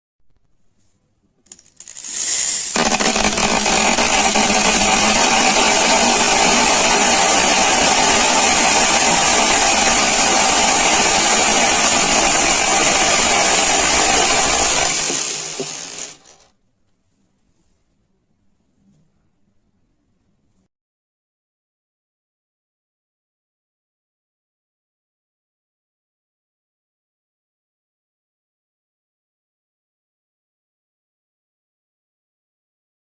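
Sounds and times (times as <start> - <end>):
beads falling and clattering: 1.5 - 10.0.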